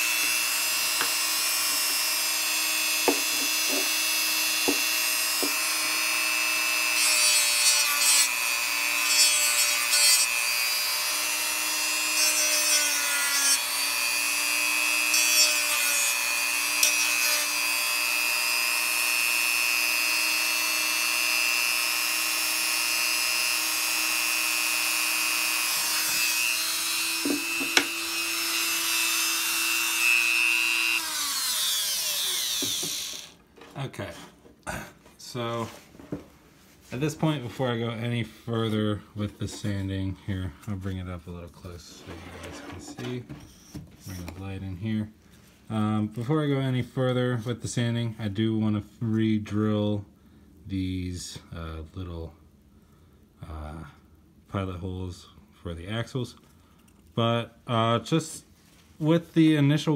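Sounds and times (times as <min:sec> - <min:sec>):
rotary tool whining: 0:00.0 - 0:33.4.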